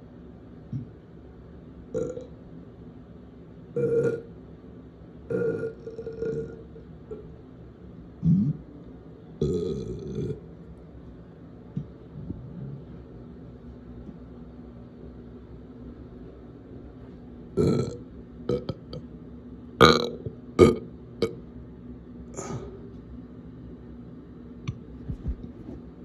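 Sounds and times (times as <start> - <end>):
person burping: 2.0 - 2.3, 3.8 - 4.3, 5.3 - 6.6, 8.2 - 8.6, 9.4 - 10.4, 17.6 - 19.0, 19.8 - 21.4.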